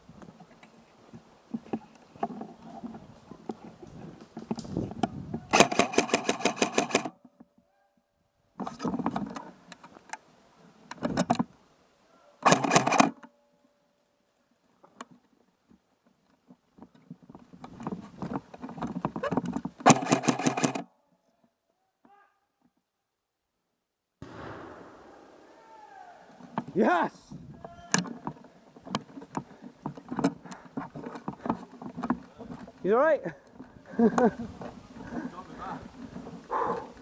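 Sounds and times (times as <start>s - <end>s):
airsoft rifle full-auto bursts: 5.5s - 7.1s, 12.4s - 13.1s, 19.9s - 20.8s.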